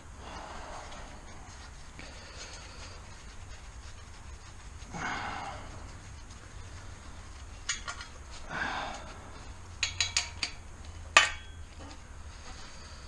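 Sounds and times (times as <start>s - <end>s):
metal tools clinking on metal: 9.8s - 11.7s.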